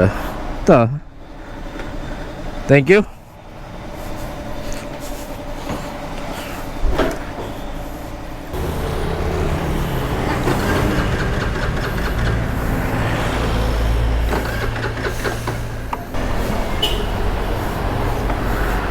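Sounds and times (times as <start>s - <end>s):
vehicle engine running: 8.5s - 18.9s.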